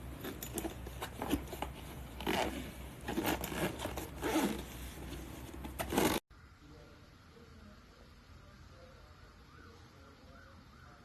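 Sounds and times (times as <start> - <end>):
rasping zipper-like scraping: 0.2 - 6.2.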